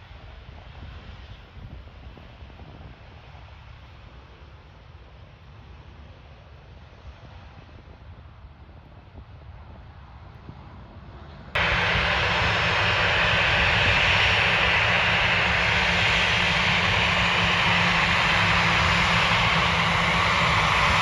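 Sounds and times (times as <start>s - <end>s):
jet engines roaring: 11.6s - 21.0s
low hum: 11.6s - 21.0s.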